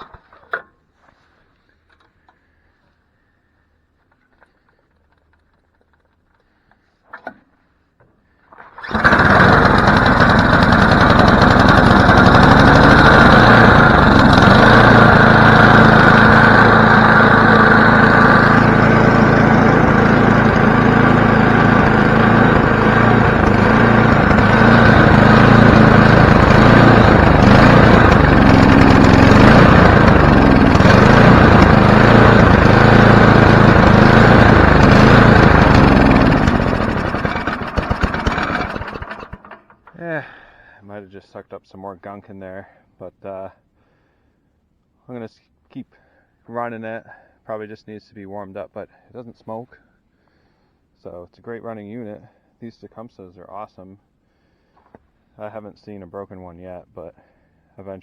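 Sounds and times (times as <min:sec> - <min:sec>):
snowblower engine running: 0:08.7 - 0:40.4.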